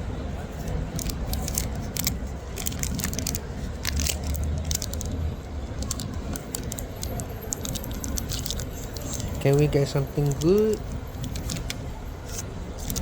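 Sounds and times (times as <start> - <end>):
packaging being torn and unwrapped: 0.9 - 5.2, 5.8 - 9.4.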